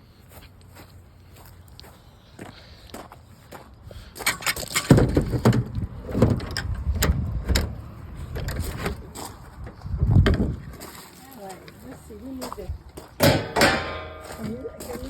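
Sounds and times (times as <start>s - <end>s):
knocks and clatter of handling: 4.2s - 7.7s, 13.2s - 15.0s.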